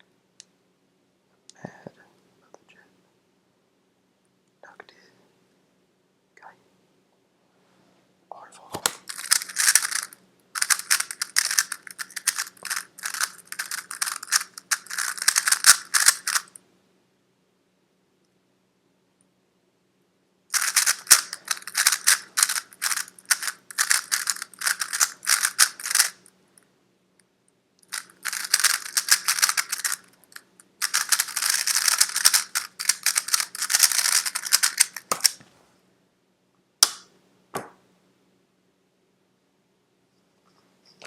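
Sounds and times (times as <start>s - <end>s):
puzzle cube plastic clatter: 8.8s - 16.6s, 20.5s - 26.3s, 27.8s - 35.4s.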